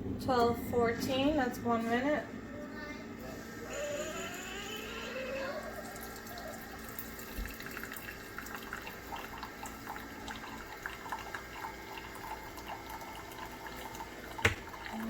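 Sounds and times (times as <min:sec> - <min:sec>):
coffee maker humming: 0:00.0 - 0:15.0
coffee dripping into mug: 0:05.9 - 0:15.0.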